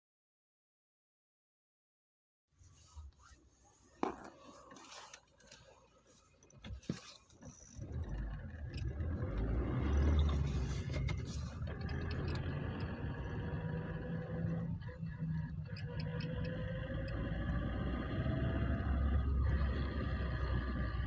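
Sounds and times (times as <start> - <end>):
car engine running: 4.9 - 21.0.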